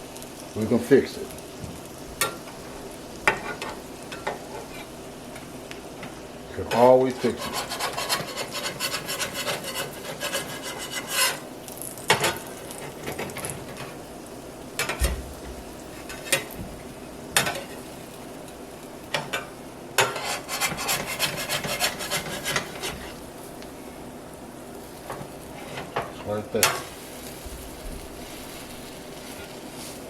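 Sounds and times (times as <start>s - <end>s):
spatula scraping a skillet: 3.2s - 5.0s, 6.1s - 11.5s, 15.9s - 16.6s, 19.2s - 23.3s, 25.0s - 27.1s, 28.2s - 30.0s.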